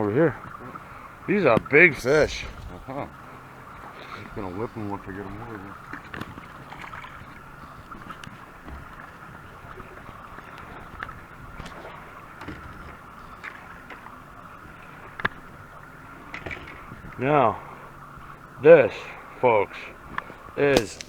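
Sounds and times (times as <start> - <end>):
water sloshing: 0.0 - 21.0
small splashes: 0.2 - 21.0.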